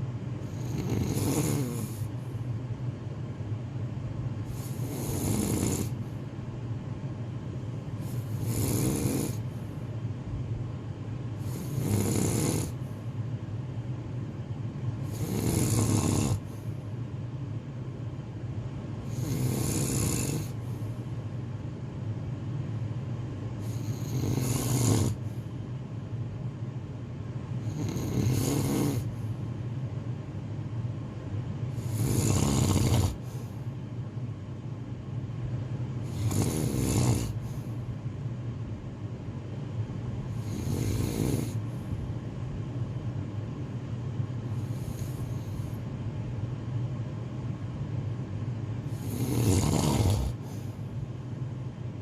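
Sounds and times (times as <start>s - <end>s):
steady low hum: 0.0s - 52.0s
person snoring: 0.4s - 2.1s, 4.5s - 6.0s, 8.0s - 9.4s, 11.4s - 12.8s, 15.0s - 16.5s, 19.0s - 20.6s, 23.6s - 25.3s, 27.6s - 29.1s, 31.7s - 33.5s, 36.0s - 37.6s, 40.3s - 41.6s, 44.5s - 45.8s, 48.9s - 50.8s.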